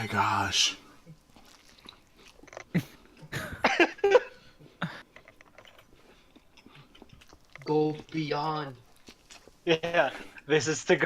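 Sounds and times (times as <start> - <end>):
man clearing his throat: 2.7 - 4.2
man coughing: 2.7 - 5.0.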